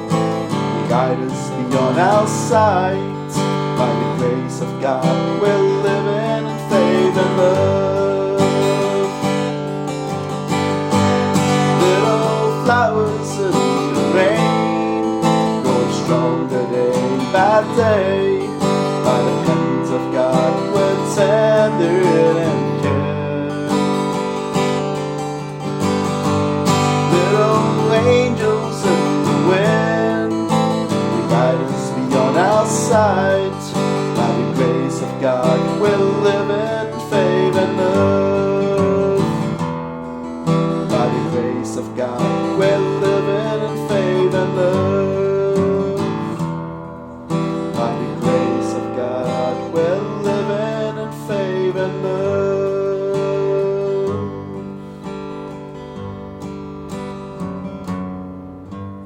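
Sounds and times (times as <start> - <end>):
acoustic guitar playing: 0.0 - 59.0.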